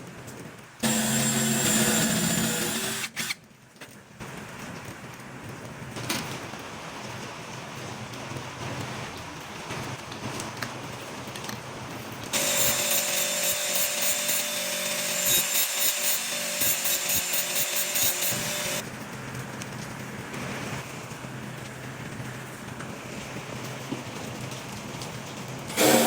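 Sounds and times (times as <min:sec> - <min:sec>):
grinder grinding metal: 0:00.8 - 0:03.4, 0:12.4 - 0:18.8, 0:25.7 - 0:26.0
grinder motor whine: 0:00.8 - 0:03.4, 0:12.4 - 0:18.8, 0:25.7 - 0:26.0.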